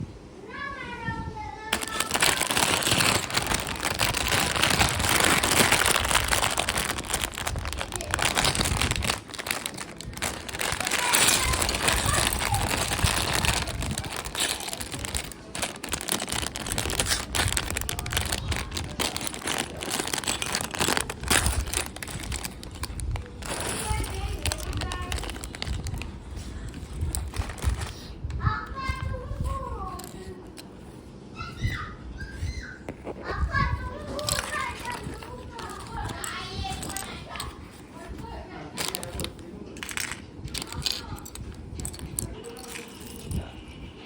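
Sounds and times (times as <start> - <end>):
plastic toy pieces clicking: 1.7 - 26.0, 34.2 - 37.5, 38.8 - 43.4
plastic packaging crinkling: 1.7 - 28.2, 32.9 - 43.6.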